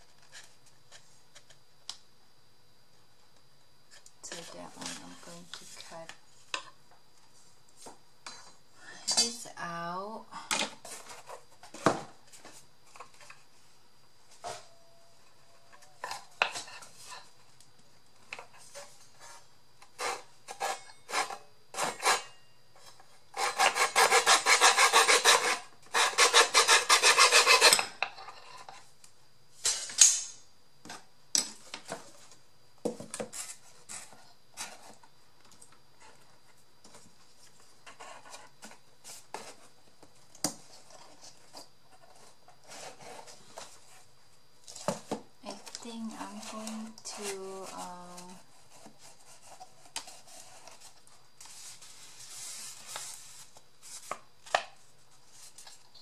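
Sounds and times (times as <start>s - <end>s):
hand saw cutting wood: 23.4s - 27.8s.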